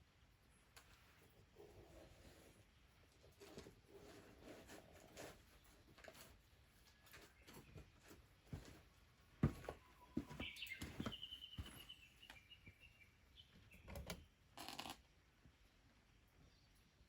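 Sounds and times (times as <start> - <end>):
small bird chirping: 9.7 - 14.9.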